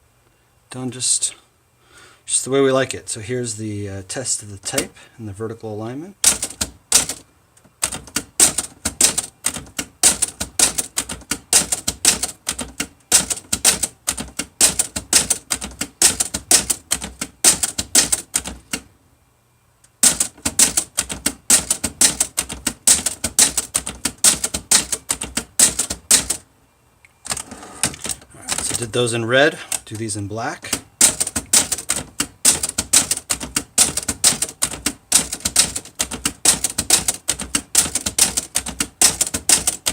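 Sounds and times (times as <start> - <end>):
manual typewriter typing: 6.2 - 18.9, 20.0 - 26.4, 27.2 - 39.9.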